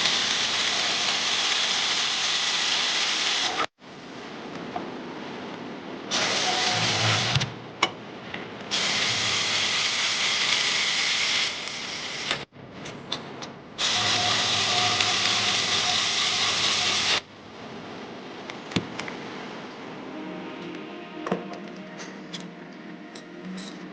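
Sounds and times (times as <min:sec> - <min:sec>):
power tool running: 0:13.8 - 0:17.2.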